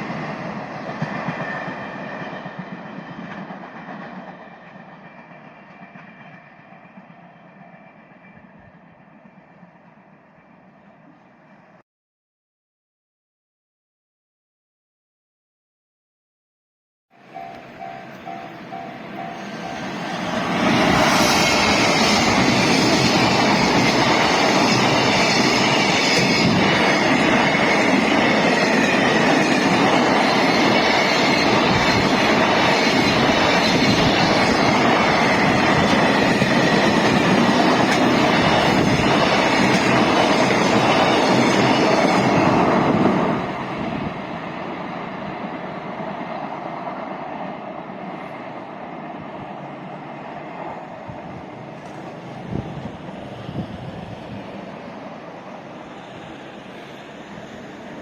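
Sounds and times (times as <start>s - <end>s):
freight train wagons rolling: 17.2s - 43.3s.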